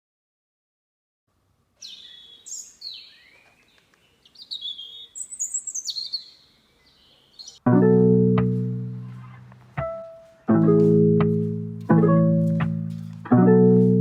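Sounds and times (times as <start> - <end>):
birds chirping and warbling: 1.8 - 7.6
plucked-string music: 7.6 - 14.0.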